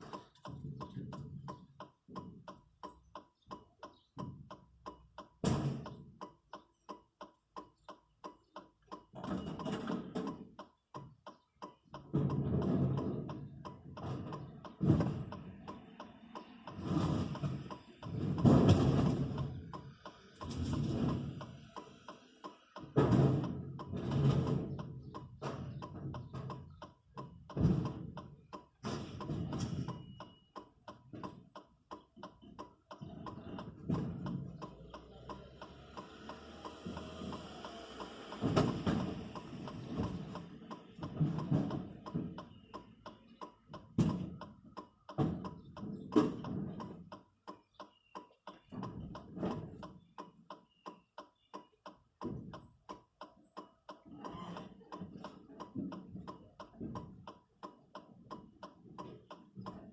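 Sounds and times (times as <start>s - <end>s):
music with ticking beat: 0.0s - 59.9s
heavy thumps: 16.7s - 21.5s, 22.8s - 30.2s, 38.3s - 42.8s.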